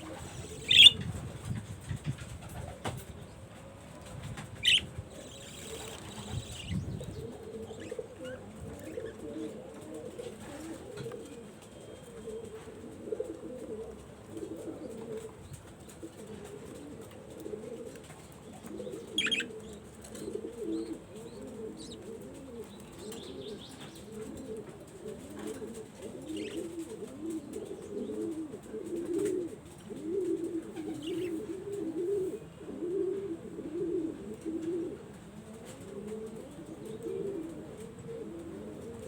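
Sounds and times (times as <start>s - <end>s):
pigeons cooing: 0.0s - 3.6s, 4.2s - 39.0s
wings flapping: 4.1s - 7.1s.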